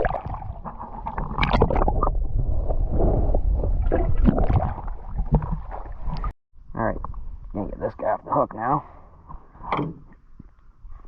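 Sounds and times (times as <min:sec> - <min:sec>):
water splashing and sloshing: 0:00.0 - 0:06.4
wind rumbling on microphone: 0:00.0 - 0:08.0.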